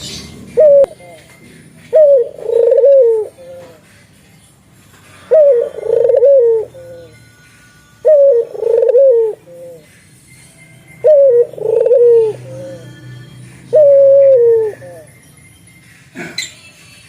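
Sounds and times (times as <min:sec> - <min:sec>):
dove cooing: 0:00.4 - 0:03.9, 0:05.2 - 0:07.2, 0:08.0 - 0:09.9, 0:11.0 - 0:13.0, 0:13.6 - 0:15.1.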